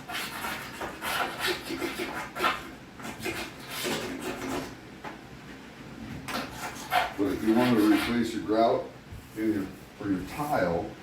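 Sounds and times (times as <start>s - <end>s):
metal tool scraping caulk joint: 6.3s - 8.2s.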